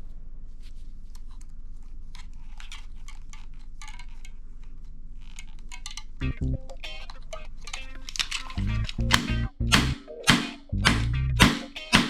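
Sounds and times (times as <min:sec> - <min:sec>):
plastic parts clicking and crackling: 0:01.2 - 0:12.0
steady low hum: 0:06.2 - 0:12.0.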